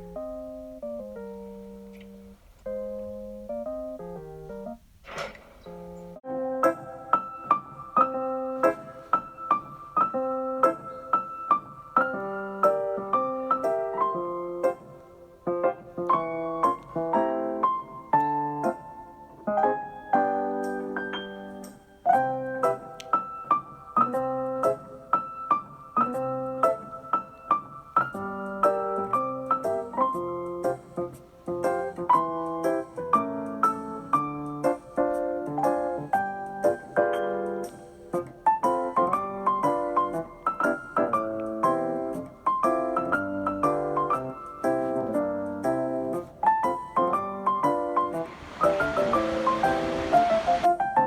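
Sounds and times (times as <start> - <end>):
piano notes and chords: 0.0 - 51.0
surf: 48.0 - 51.0.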